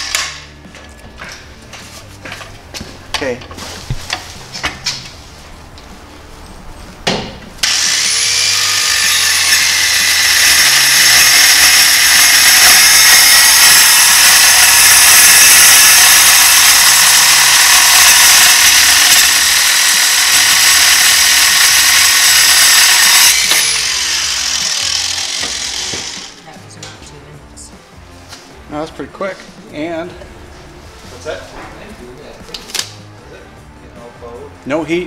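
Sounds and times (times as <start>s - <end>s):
metal saw cutting metal: 7.6s - 26.4s
saw blade winding down: 7.6s - 26.4s.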